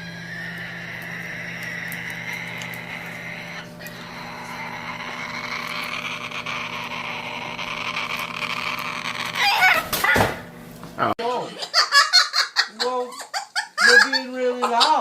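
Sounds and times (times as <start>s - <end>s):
parrot calling raspily: 0.0s - 10.4s, 11.4s - 15.0s
low steady hum: 0.0s - 11.2s.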